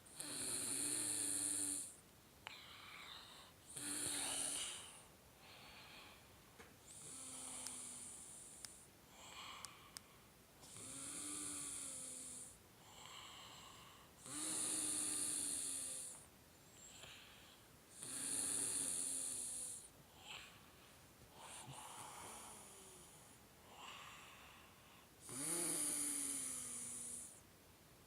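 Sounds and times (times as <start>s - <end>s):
quiet breaths: 0.0s - 28.0s
loud snoring: 0.1s - 2.0s, 3.7s - 4.9s, 6.9s - 8.6s, 10.6s - 12.6s, 14.2s - 16.2s, 18.0s - 19.9s, 25.2s - 27.4s.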